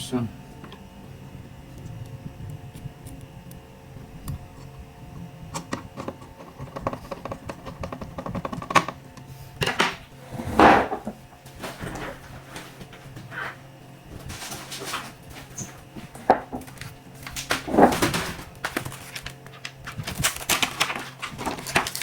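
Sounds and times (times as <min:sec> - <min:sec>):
scraping rustles: 0:10.1 - 0:22.0.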